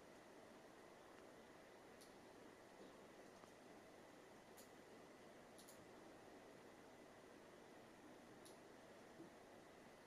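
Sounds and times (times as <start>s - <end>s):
small click: 5.6s - 5.8s.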